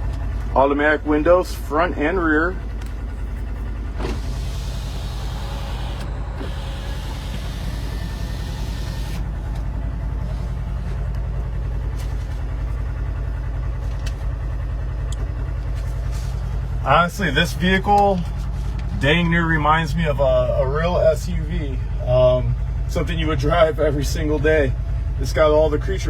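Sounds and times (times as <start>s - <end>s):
engine idling: 0.0s - 26.0s
power window motor: 3.1s - 9.7s.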